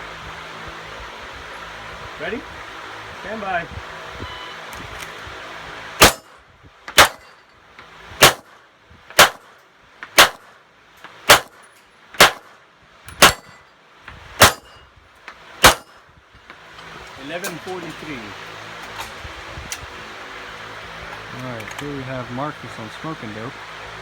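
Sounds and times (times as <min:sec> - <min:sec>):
pistol shots: 0:06.0 - 0:07.4, 0:08.2 - 0:08.6, 0:09.2 - 0:09.6, 0:10.2 - 0:10.6, 0:11.3 - 0:11.6, 0:12.2 - 0:12.6, 0:13.2 - 0:13.6, 0:14.4 - 0:14.8, 0:15.6 - 0:16.0
steel targets clanging: 0:06.0 - 0:07.6, 0:13.1 - 0:13.8, 0:14.4 - 0:15.0, 0:15.6 - 0:16.0, 0:17.1 - 0:19.2.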